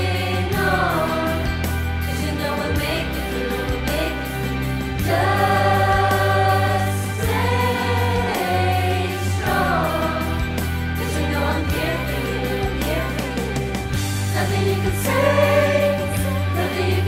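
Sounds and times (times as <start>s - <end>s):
pop backing track with bass: 0.0s - 17.0s
group singing held notes: 5.0s - 13.4s, 14.3s - 17.0s.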